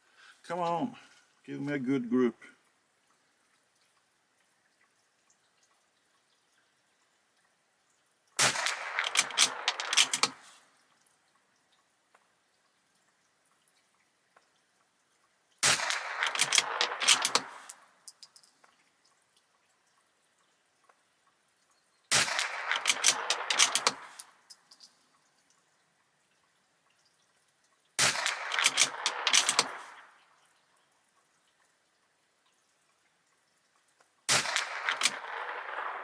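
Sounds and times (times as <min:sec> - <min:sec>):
rifle shots: 0:08.4 - 0:10.4, 0:15.6 - 0:17.7, 0:22.1 - 0:24.2, 0:28.0 - 0:30.0, 0:34.3 - 0:36.0
rifle bolt clicking and rattling: 0:08.6 - 0:10.4, 0:15.9 - 0:18.6, 0:22.3 - 0:24.9, 0:28.1 - 0:30.0, 0:34.4 - 0:35.5.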